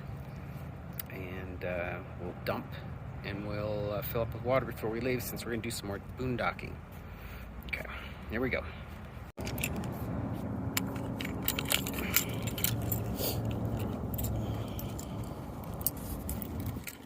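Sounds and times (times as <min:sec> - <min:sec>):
steady low hum: 0:06.8 - 0:17.0
keys jangling: 0:09.4 - 0:10.0, 0:10.7 - 0:17.0.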